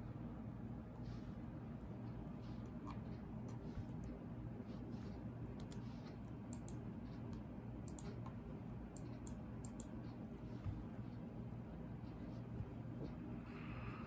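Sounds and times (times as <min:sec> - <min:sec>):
light clicks and ticks: 0:05.6 - 0:10.2.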